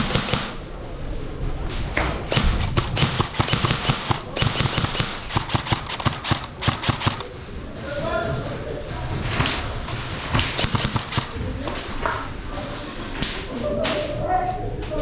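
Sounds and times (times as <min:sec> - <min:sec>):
sharp knocks and thuds: 0:01.6 - 0:08.2, 0:08.8 - 0:12.2.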